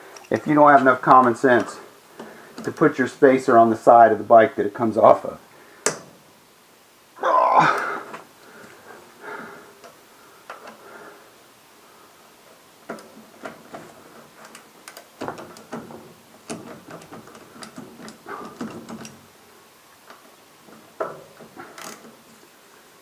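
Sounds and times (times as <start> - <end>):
hand tools clicking on metal: 0.0 - 3.0, 12.9 - 19.2.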